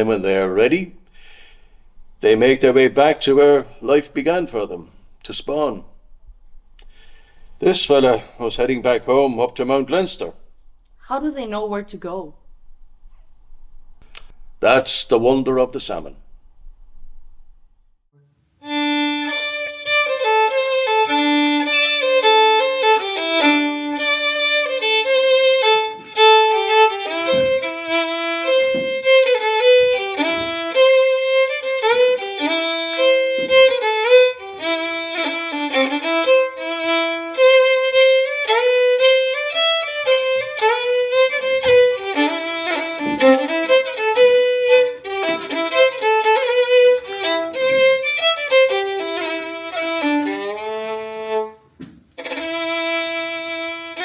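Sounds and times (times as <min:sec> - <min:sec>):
fiddle playing a tune: 0:18.6 - 0:54.0.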